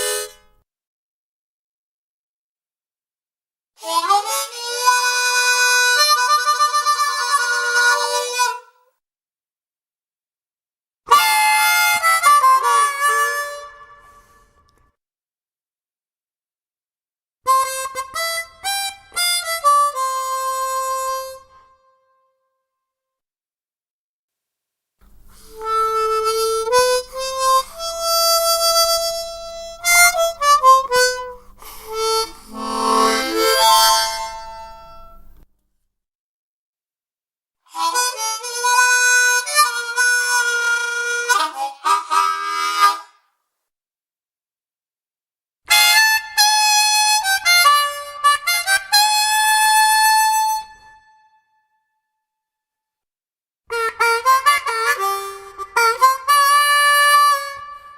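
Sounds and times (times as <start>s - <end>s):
harmonica playing: 0.0s - 0.5s, 3.8s - 8.6s, 11.1s - 14.4s, 17.5s - 21.5s, 25.1s - 35.4s, 37.7s - 43.0s, 53.7s - 57.9s.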